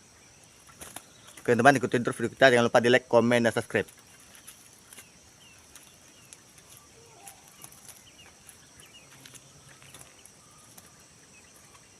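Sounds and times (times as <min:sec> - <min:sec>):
bird chirps: 0:00.0 - 0:02.7, 0:03.6 - 0:11.9
high insect drone: 0:00.0 - 0:11.9.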